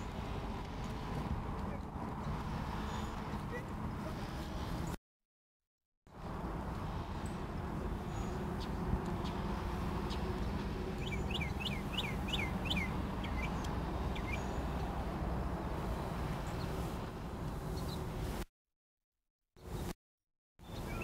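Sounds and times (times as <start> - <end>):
songbird chirping: 7.1 - 16.9, 20.6 - 21.0.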